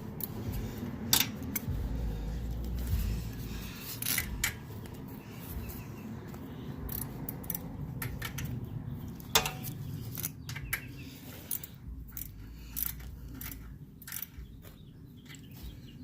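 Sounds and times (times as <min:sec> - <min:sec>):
socket ratchet clicking: 0:06.9 - 0:08.6, 0:11.5 - 0:14.5.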